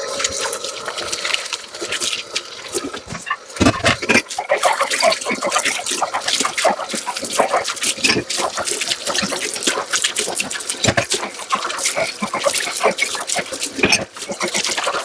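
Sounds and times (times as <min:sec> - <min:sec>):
running water splashing: 0:00.0 - 0:15.0
dishes clinking: 0:03.1 - 0:04.3, 0:10.8 - 0:11.1, 0:13.8 - 0:14.1.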